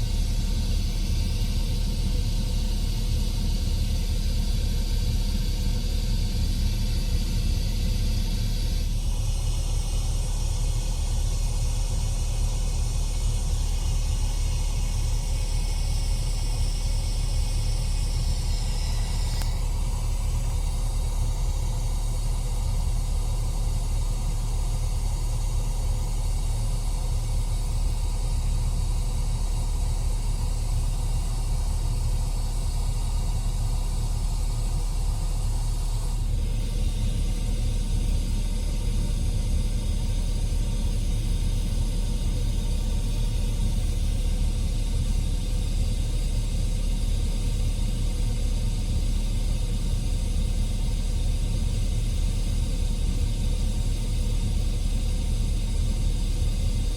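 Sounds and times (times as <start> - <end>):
click: 19.3 - 19.6.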